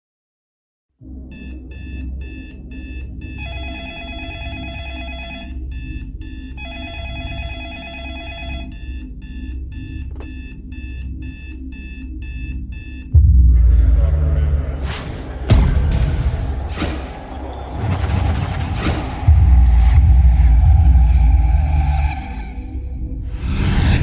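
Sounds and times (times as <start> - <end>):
steady low bass: 5.4 - 7.4, 8.4 - 23.8.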